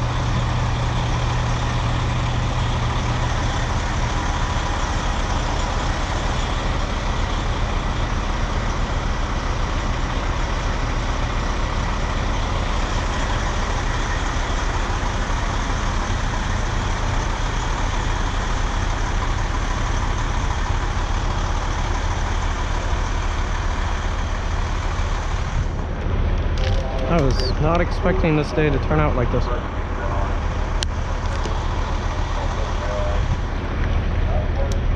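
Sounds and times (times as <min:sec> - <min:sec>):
fire engine idling: 0:00.0 - 0:34.9.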